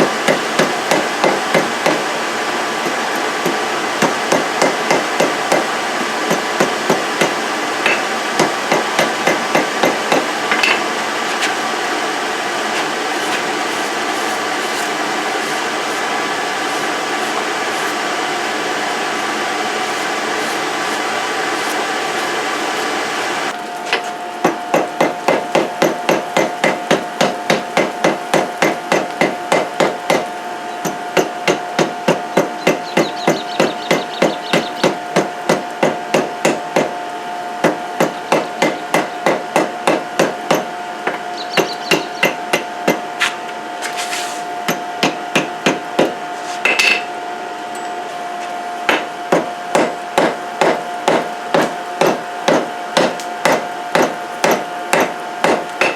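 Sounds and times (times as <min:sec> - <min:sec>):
forge blower hum: 0:00.0 - 0:55.9
hammer striking steel on anvil: 0:00.3 - 0:02.0, 0:02.8 - 0:05.7, 0:06.3 - 0:10.8, 0:24.4 - 0:36.9, 0:37.6 - 0:43.0, 0:44.7 - 0:47.1, 0:48.9 - 0:55.9.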